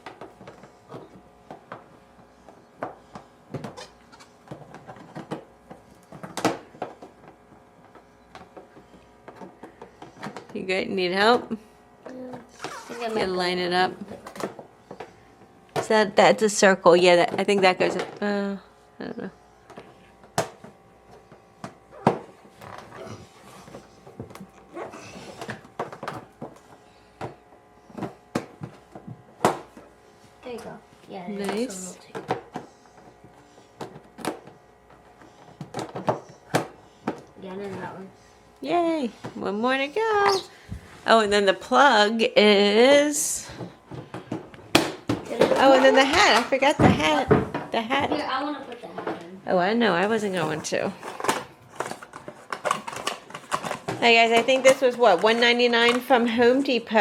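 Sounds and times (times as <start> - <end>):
plastic parts clicking and knocking: 51.0 - 56.2.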